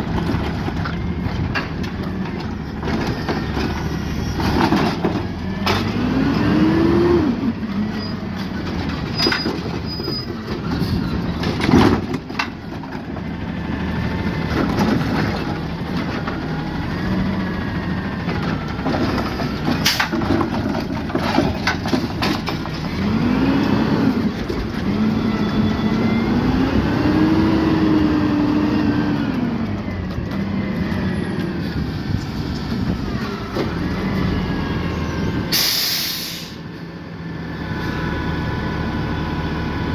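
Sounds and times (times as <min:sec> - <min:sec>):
knocks and clatter of bin and recyclables: 0:00.0 - 0:28.0
garbage truck engine and hydraulics: 0:00.0 - 0:39.9.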